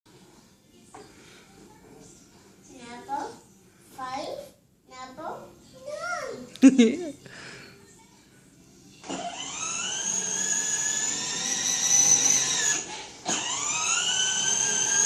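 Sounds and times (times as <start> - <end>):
electric motor whining: 9.0 - 15.0.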